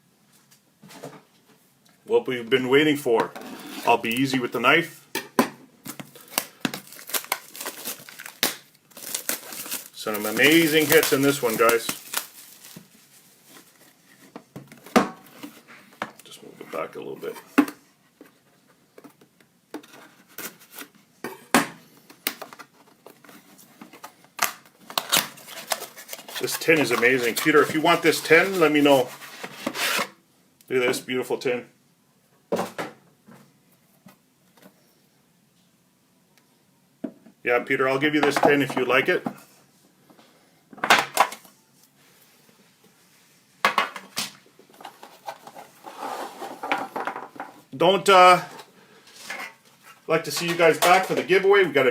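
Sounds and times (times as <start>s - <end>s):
card box rustling: 6.2s - 14.3s, 24.9s - 30.1s.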